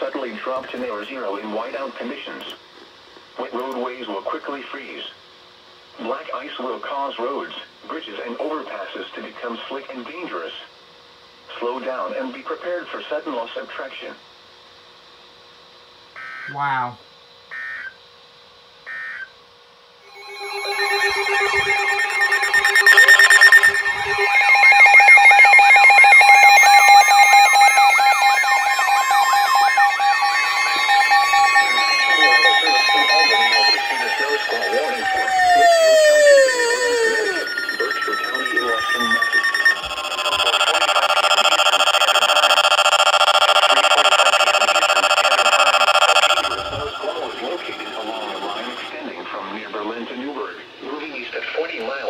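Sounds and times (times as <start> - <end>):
steady low alarm tone: 16.1 - 18.1, 18.7 - 19.4, 20.0 - 49.1
rapidly pulsing beep: 20.1 - 49.0
warbling siren sweep: 20.1 - 49.0.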